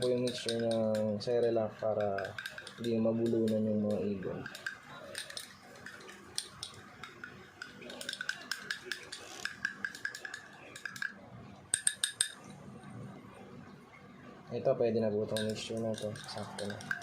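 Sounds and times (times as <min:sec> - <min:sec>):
spoon tapping container: 0:00.0 - 0:11.2, 0:11.8 - 0:12.5, 0:15.3 - 0:17.0
spoon stirring and clicking container: 0:00.0 - 0:12.5, 0:15.3 - 0:17.0.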